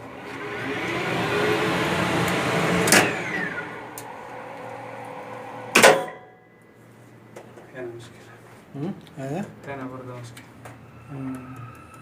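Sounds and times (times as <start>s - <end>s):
lift motor running: 0.0s - 5.9s
falling whine: 0.0s - 6.0s, 10.4s - 12.0s.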